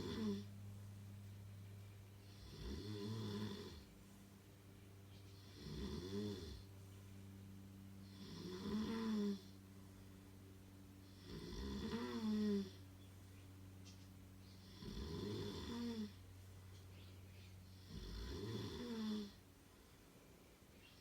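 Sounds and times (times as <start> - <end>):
rough pitched snores: 0.0 - 0.5, 2.2 - 3.8, 5.4 - 6.6, 8.0 - 9.5, 11.1 - 12.8, 14.6 - 16.2, 17.8 - 19.4
steady low hum: 0.0 - 21.0.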